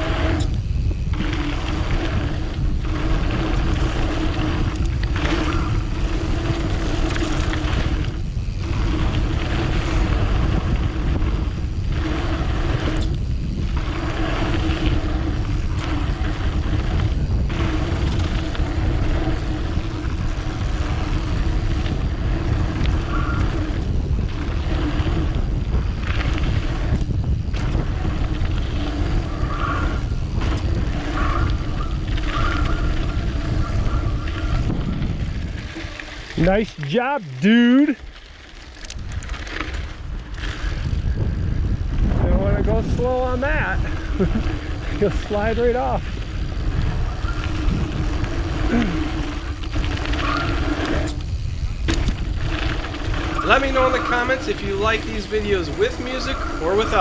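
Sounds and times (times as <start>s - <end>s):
tyres rumbling on dirt: 0.0s - 27.0s, 42.1s - 57.0s
wind rushing over microphone: 0.0s - 57.0s.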